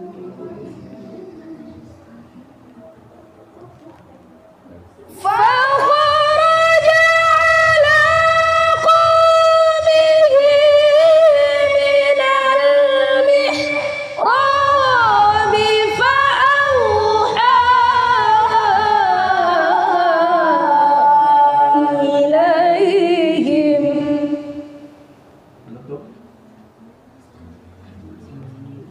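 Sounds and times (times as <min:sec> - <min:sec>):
high voice reciting melodically: 0:05.1 - 0:24.8.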